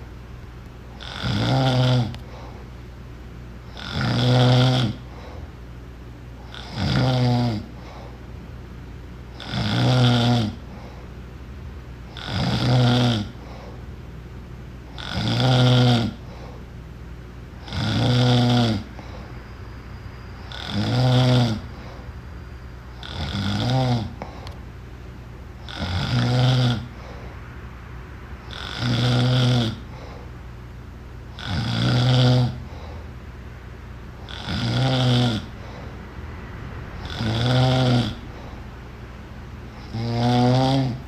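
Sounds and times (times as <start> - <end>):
person snoring: 1.0 - 2.6, 3.7 - 5.4, 6.4 - 8.2, 9.3 - 10.8, 12.1 - 13.8, 14.9 - 16.6, 17.6 - 19.3, 20.3 - 22.2, 22.9 - 24.6, 25.6 - 27.3, 28.4 - 30.3, 31.4 - 33.0, 34.2 - 35.9, 37.0 - 38.6, 39.7 - 41.0.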